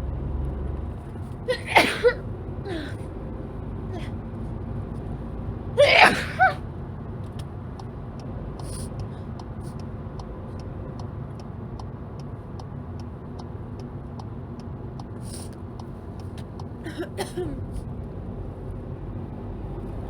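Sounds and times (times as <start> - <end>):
car cabin road rumble: 0.0 - 20.0
woman sneezing: 1.5 - 3.0, 5.8 - 6.6, 16.8 - 17.8
woman sniffing: 1.5 - 3.0, 5.8 - 6.6
light regular ticking: 7.2 - 16.8.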